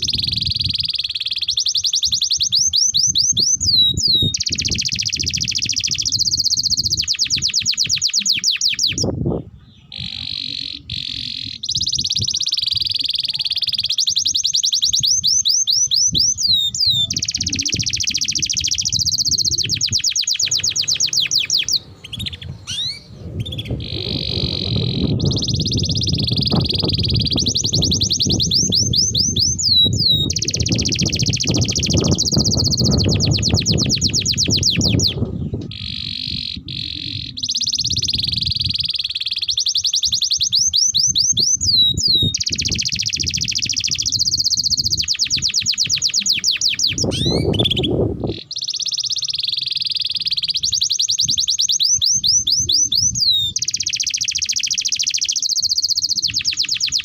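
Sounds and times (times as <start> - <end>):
canary singing trills: 0.0 - 57.0
low rumbling noise: 18.9 - 39.0, 42.6 - 48.5.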